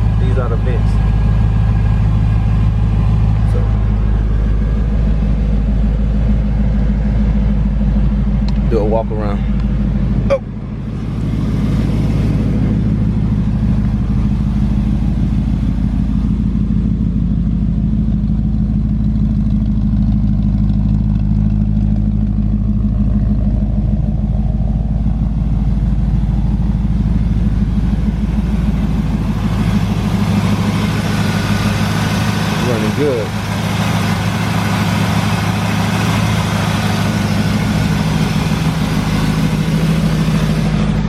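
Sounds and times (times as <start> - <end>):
car engine idling: 0.0 - 41.0.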